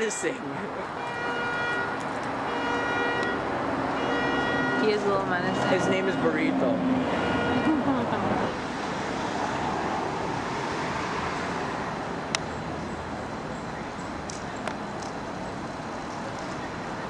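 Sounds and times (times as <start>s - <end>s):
street traffic noise: 0.0s - 17.0s.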